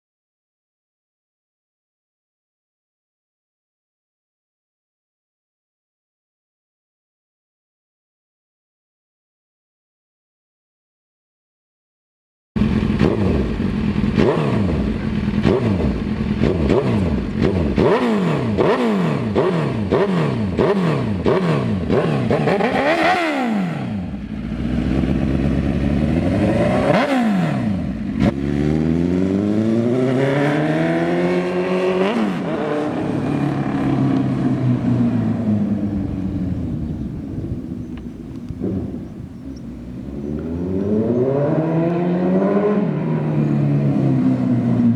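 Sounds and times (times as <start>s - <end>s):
motorcycle engine revving: 12.6s - 44.9s.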